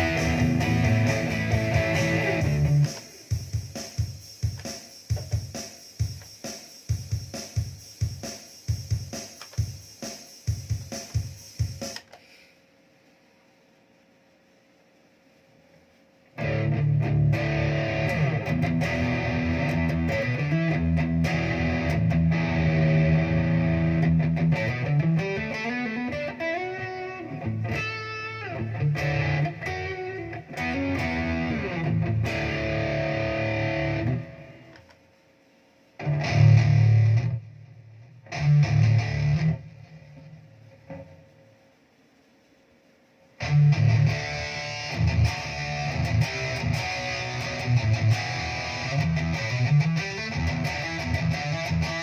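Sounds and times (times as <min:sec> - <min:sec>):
distorted electric guitar: 0:00.0 - 0:07.6, 0:16.4 - 0:34.9, 0:36.0 - 0:41.6, 0:43.4 - 0:52.0.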